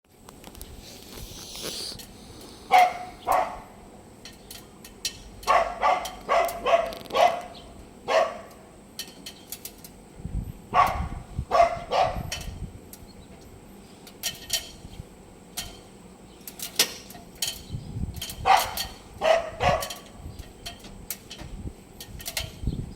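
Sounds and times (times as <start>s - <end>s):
dog barking: 2.7s - 3.7s, 5.5s - 7.5s, 8.1s - 8.5s, 10.7s - 12.3s, 18.5s - 20.0s.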